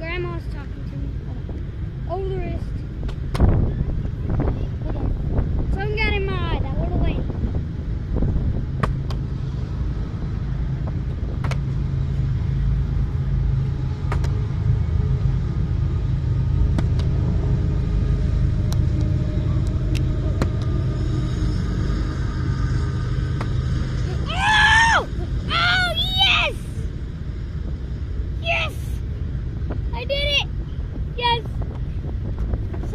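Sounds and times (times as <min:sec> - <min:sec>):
constant low hum: 0:00.0 - 0:32.9
low vehicle rumble: 0:00.0 - 0:32.9.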